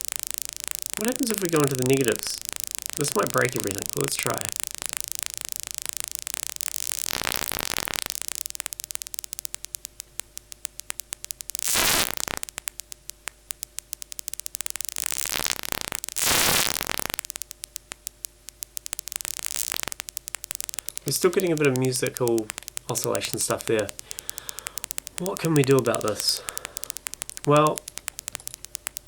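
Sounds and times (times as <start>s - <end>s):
faint steady synth tones: 0.0s - 29.0s
synthesized paper crumpling crackles: 1.0s - 5.0s, 19.2s - 29.0s.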